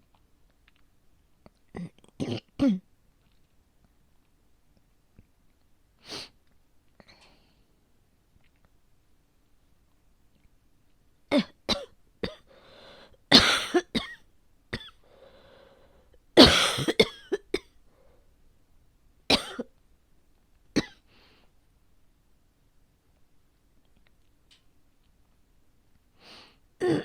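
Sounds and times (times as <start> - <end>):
drawn-in breaths: 12.5 - 13.2, 15.0 - 16.2
woman coughing: 13.3 - 14.2, 16.4 - 17.8, 19.3 - 19.7, 20.8 - 21.0.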